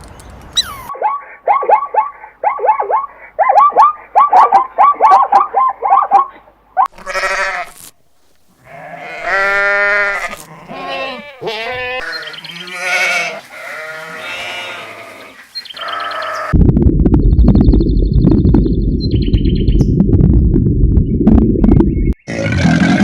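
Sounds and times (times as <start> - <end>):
livestock bleating: 6.9 - 7.8, 8.6 - 16.6.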